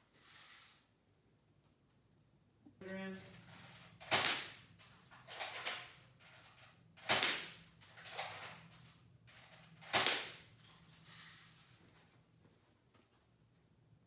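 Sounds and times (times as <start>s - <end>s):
airsoft rifle shots: 7.0s - 7.6s.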